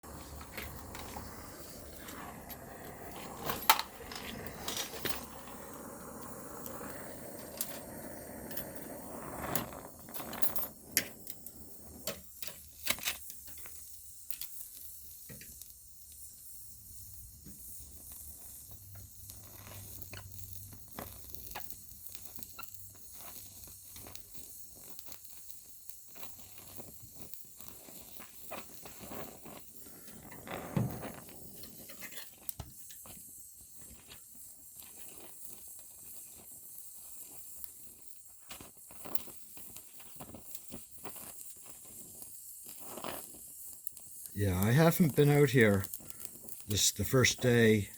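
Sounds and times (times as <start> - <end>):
welding arc pop: 0.0 - 7.8
welding arc crackling and sizzling: 0.0 - 47.9.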